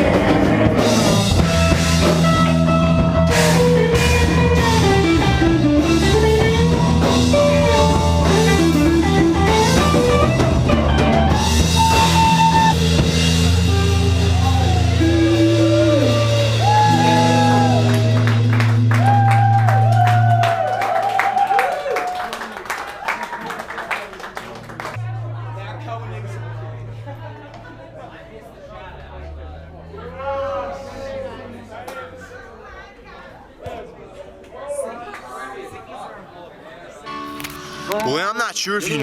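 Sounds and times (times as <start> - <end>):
rock music: 0.0 - 17.5, 37.1 - 39.0
person singing: 37.1 - 39.0.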